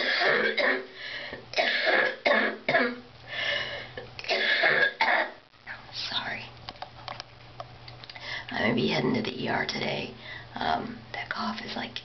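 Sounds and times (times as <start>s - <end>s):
man coughing hard: 0.0s - 0.9s, 1.6s - 3.0s, 4.3s - 5.4s.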